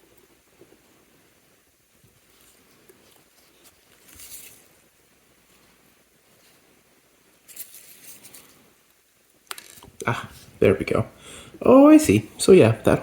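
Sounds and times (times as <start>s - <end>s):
small tools scratching and rustling: 2.1s - 6.7s, 7.3s - 10.5s.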